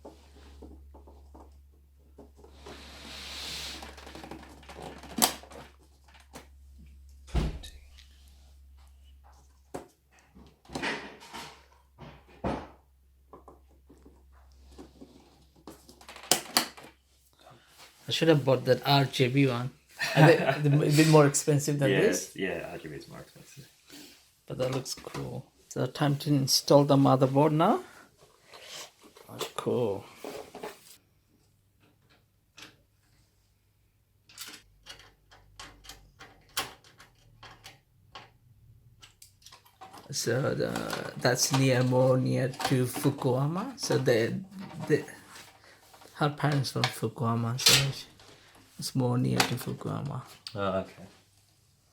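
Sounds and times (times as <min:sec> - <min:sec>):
computer parts clicking and knocking: 0:15.8 - 0:17.0, 0:34.2 - 0:44.0.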